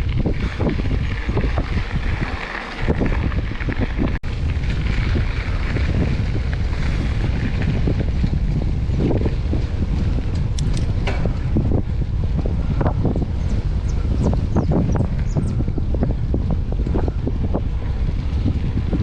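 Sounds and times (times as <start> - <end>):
bike rattling and knocking: 0.0 - 19.0
bike tyres rolling on dirt: 0.0 - 19.0
wind buffeting microphone: 0.0 - 19.0.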